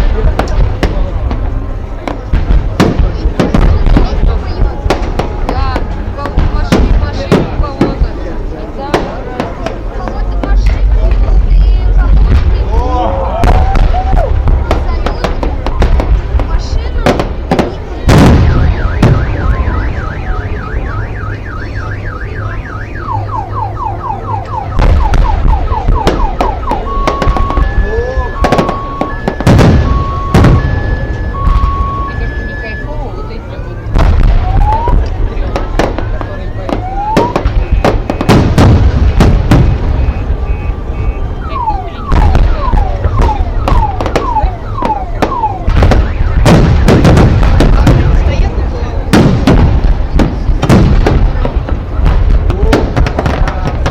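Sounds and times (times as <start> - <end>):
firework booms: 0.0 - 53.9
low rumble: 0.0 - 53.9
car alarm siren: 18.3 - 38.5, 39.4 - 48.2
falling firework whistles: 24.5 - 33.3.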